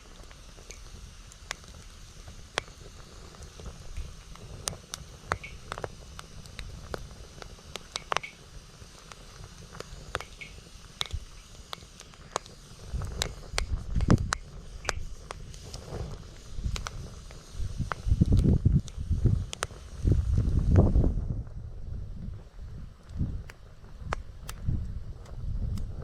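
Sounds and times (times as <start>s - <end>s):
wood fire crackling: 0.0s - 20.6s, 22.2s - 26.0s
wind buffeting microphone: 16.5s - 26.0s.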